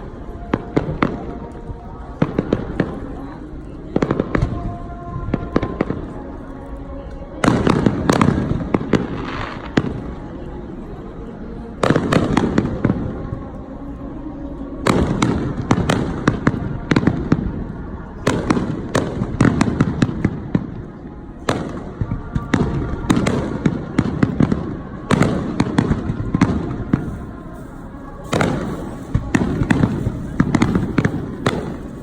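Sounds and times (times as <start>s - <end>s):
fireworks crackling pops: 7.4s - 10.3s, 18.2s - 32.0s.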